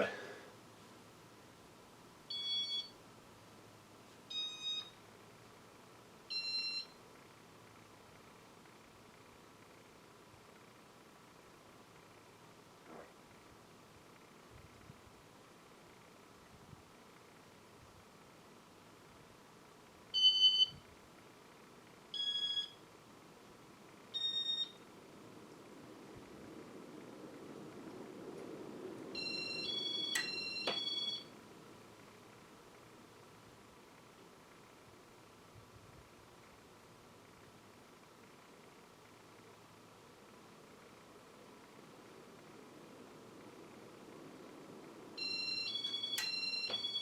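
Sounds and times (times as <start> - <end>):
short electronic beeps: 2.3 - 2.9, 4.3 - 4.9, 20.2 - 20.8, 22.2 - 22.8, 24.2 - 24.8, 29.2 - 31.3.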